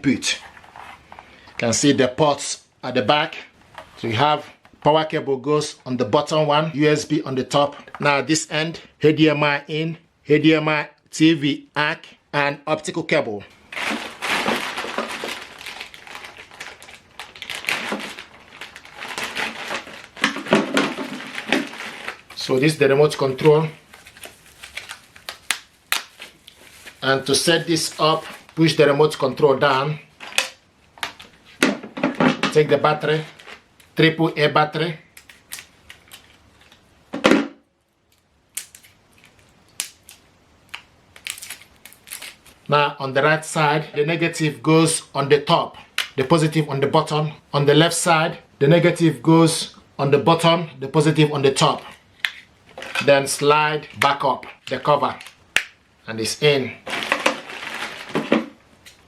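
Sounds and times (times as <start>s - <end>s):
packaging rustling and crackling: 13.6s - 28.7s, 33.2s - 34.0s, 35.2s - 36.9s, 38.1s - 42.6s, 56.8s - 59.0s.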